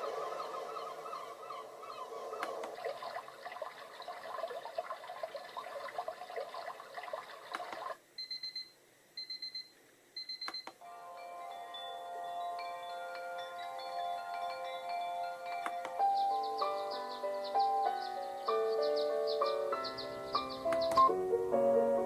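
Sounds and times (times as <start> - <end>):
recorded bird calls: 0.0 - 8.0, 12.3 - 21.2
chiming melody: 10.8 - 21.0.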